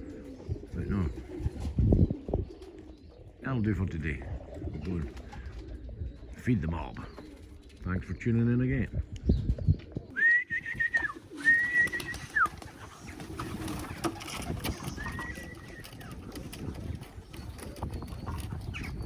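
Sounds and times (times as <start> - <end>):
pigeons cooing: 0.0 - 7.8, 9.0 - 19.0
high whistled notes: 10.2 - 12.6.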